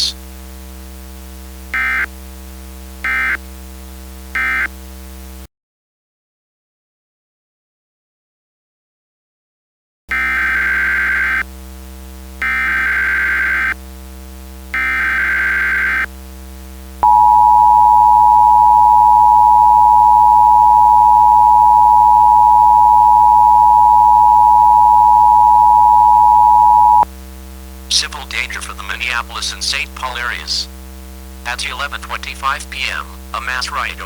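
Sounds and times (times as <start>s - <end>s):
buzzing digital header data: 0.0s - 5.4s, 10.1s - 34.0s
low hum: 17.0s - 27.0s
steady attention tone: 17.0s - 27.1s, 27.9s - 30.8s, 31.4s - 34.0s.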